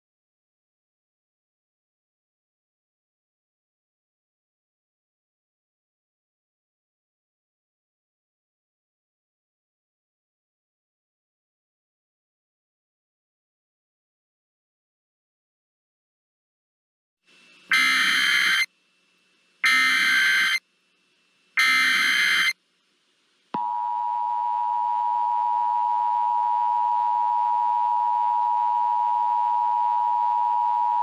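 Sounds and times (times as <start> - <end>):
screeching data bursts: 17.7 - 18.7, 19.6 - 20.6, 21.6 - 22.6
two-tone alert signal: 17.7 - 18.7, 19.6 - 20.6, 21.6 - 22.5.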